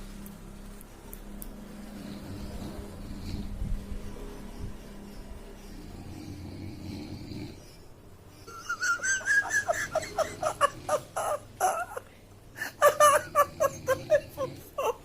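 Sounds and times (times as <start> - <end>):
high-pitched giggling laughter: 8.5 - 15.0.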